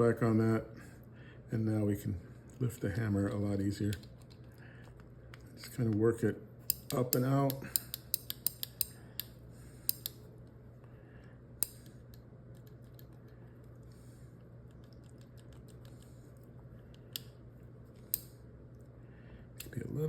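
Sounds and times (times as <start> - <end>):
low steady hum: 0.0 - 20.0
metallic clicks of revolver parts: 6.6 - 10.2, 11.6 - 13.2, 18.0 - 18.4.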